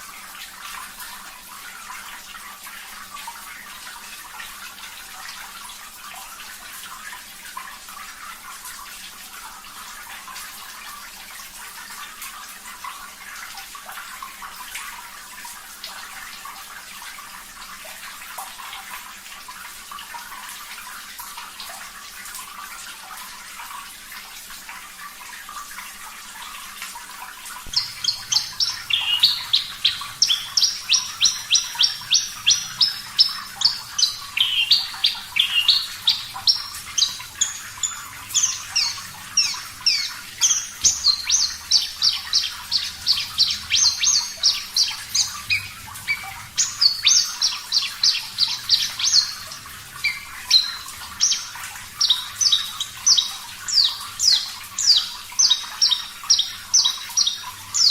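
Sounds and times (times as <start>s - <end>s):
running water hissing: 22.6s - 57.9s
bush lark singing: 27.7s - 57.9s.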